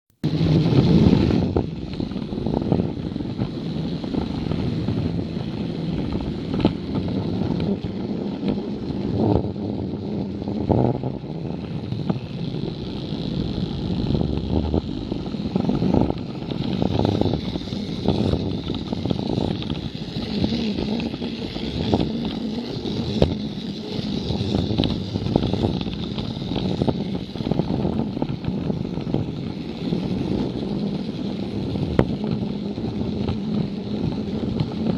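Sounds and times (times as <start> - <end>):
toy train motor running: 0.2 - 34.9
wheels clicking over track joints: 0.2 - 34.9.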